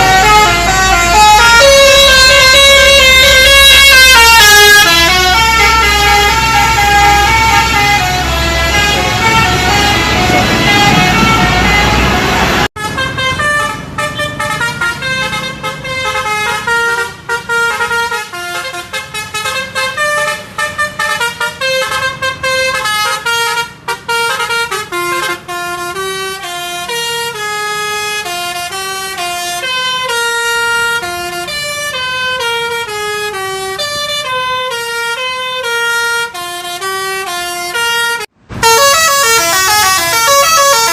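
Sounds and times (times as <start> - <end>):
engine rumble: 0.0 - 18.0
musical bus air horn: 0.0 - 40.9.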